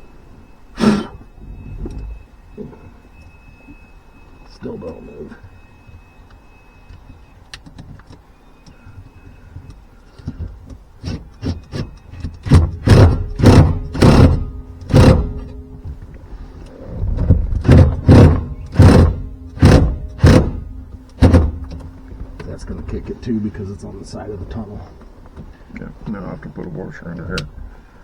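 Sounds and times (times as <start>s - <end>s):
loud short knocks: 10.2s - 16.1s, 17.1s - 22.5s.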